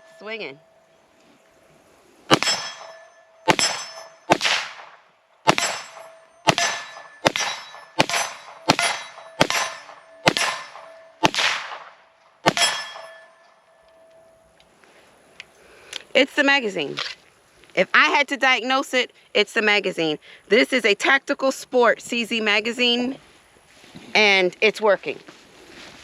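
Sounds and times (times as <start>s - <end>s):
pistol shots: 2.3s - 13.2s
steel target ringing: 2.3s - 14.5s.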